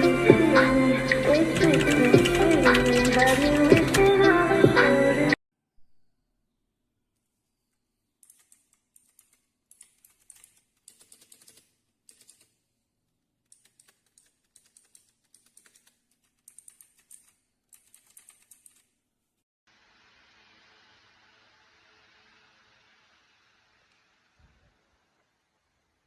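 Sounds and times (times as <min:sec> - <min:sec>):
faint mechanical keyboard typing: 0:01.2 - 0:04.3, 0:08.2 - 0:12.7, 0:13.4 - 0:19.0.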